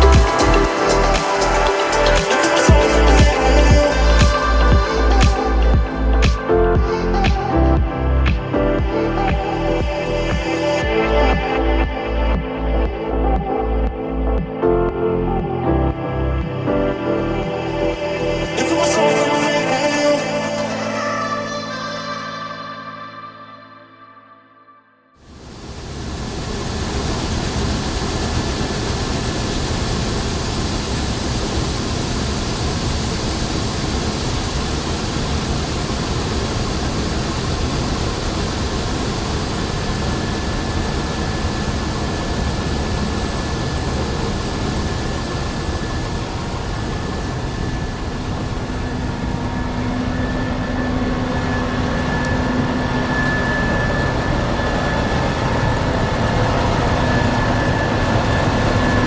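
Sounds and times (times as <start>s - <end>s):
thin steady whine: 25.2s - 59.0s.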